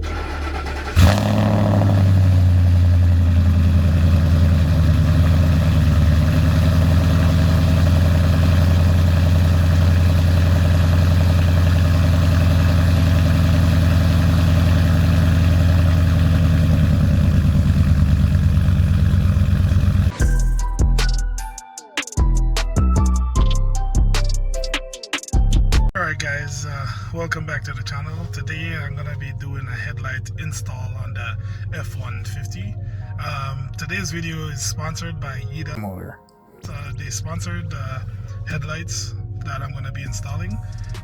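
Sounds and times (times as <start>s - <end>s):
pickup engine starting and idling: 0.0s - 20.6s.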